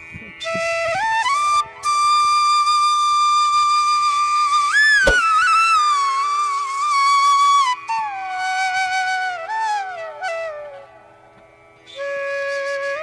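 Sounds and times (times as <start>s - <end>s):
single click: 5.1s - 5.3s.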